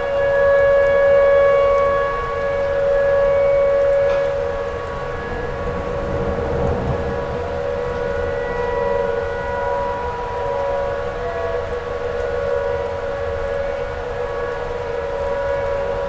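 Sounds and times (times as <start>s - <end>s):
warning siren steady tone: 0.0s - 16.0s
low rumble: 4.8s - 8.6s.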